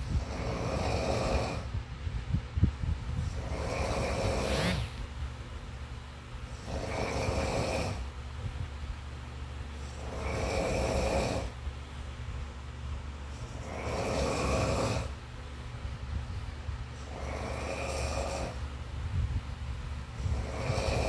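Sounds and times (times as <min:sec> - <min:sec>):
snoring: 0:00.0 - 0:01.8, 0:03.1 - 0:05.2, 0:06.4 - 0:08.2, 0:09.8 - 0:11.6, 0:13.4 - 0:15.2, 0:17.0 - 0:19.3, 0:20.0 - 0:21.0
steady low hum: 0:00.0 - 0:21.0.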